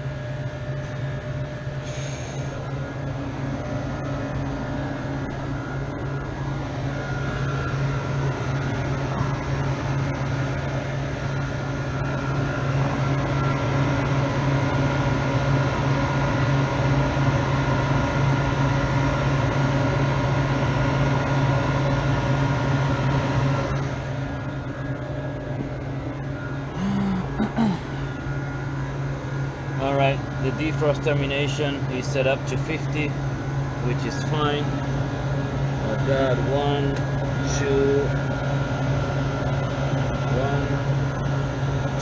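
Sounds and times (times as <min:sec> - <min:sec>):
faint whining tones: 0:00.0 - 0:14.2, 0:23.7 - 0:31.8
refrigeration low hum: 0:00.0 - 0:42.0.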